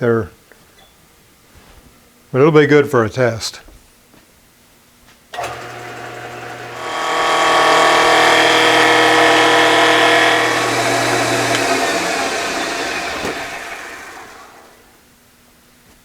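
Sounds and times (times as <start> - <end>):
lathe whining rushing noise: 5.4 - 14.9
low motor hum: 5.4 - 15.0
click: 8.9 - 11.9.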